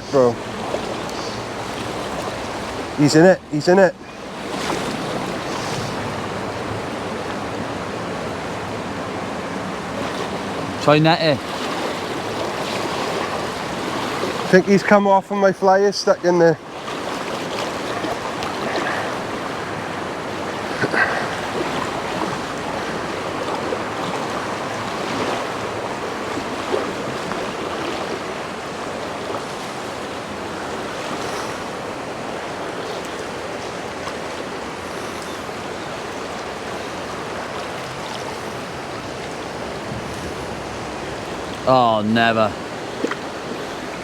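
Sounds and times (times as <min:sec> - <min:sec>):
river water rushing over stones: 0:00.0 - 0:44.0
faint knocks or splashes: 0:42.9 - 0:43.3.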